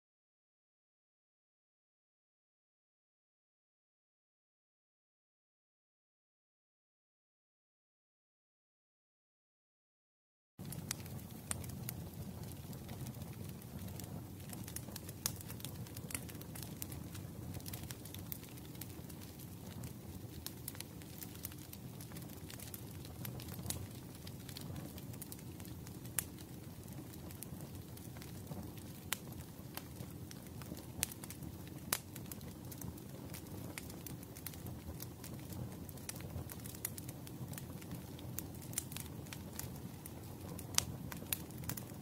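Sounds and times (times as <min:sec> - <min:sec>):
wood fire crackling: 0:10.6 - 0:42.0.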